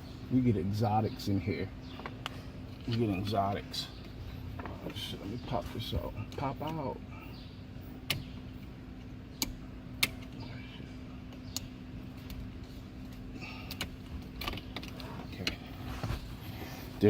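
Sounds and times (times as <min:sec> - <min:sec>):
steady low hum: 0:00.0 - 0:17.0
sharp clicks and knocks: 0:08.0 - 0:08.6, 0:11.3 - 0:16.3.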